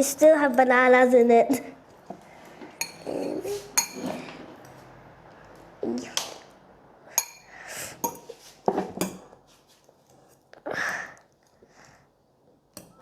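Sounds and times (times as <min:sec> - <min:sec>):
metal fork clinking on bowl: 0:02.8 - 0:04.1, 0:07.2 - 0:08.2.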